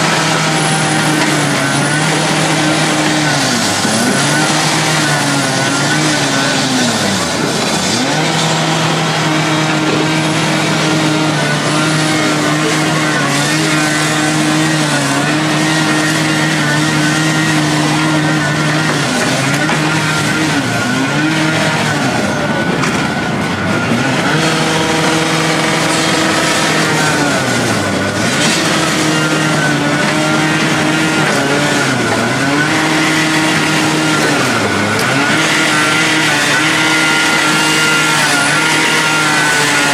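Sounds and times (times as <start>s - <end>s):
excavator diesel engine revving: 0.0s - 39.9s.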